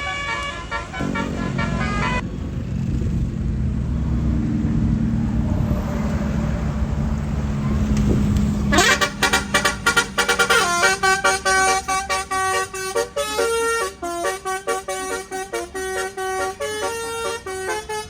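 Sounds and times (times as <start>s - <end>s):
stuttering musical horn blasts: 0.0s - 2.3s, 8.7s - 18.0s
bus engine rumbling: 0.0s - 18.0s
multi-tone horn chord: 0.4s - 2.3s, 8.7s - 18.0s.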